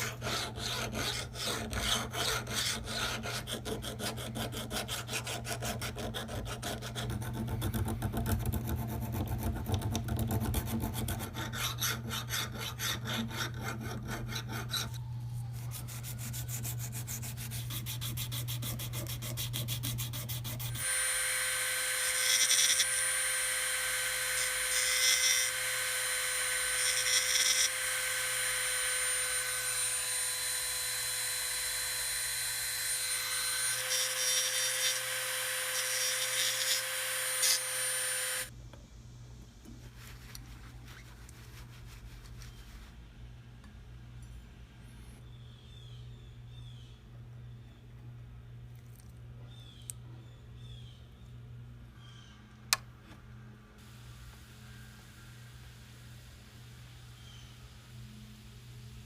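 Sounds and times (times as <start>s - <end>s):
rasping on metal: 0.0s - 15.0s, 15.6s - 21.0s
power tool grinding metal: 19.2s - 38.5s.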